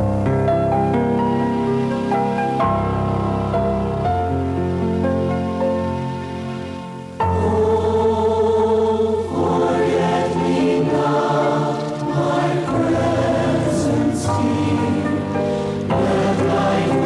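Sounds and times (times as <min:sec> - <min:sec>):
congregation singing: 0:07.2 - 0:17.0.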